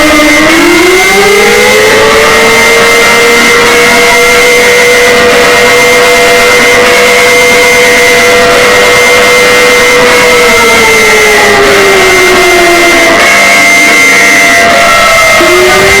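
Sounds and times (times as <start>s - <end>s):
distorted siren tone: 0.0s - 16.0s
harsh static-like noise: 2.6s - 10.9s, 11.8s - 16.0s.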